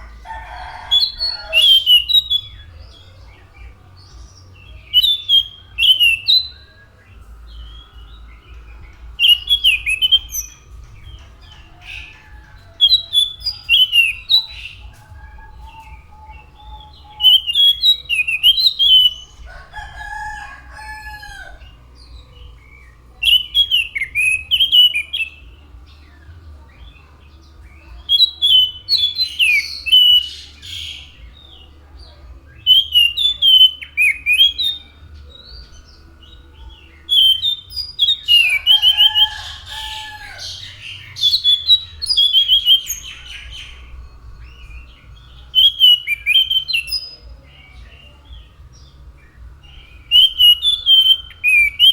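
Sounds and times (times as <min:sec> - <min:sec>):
thrush singing whistled phrases: 0:00.9 - 0:03.1, 0:04.0 - 0:19.4, 0:22.0 - 0:25.5, 0:28.1 - 0:31.5, 0:32.6 - 0:35.0, 0:37.1 - 0:47.2, 0:49.8 - 0:51.9.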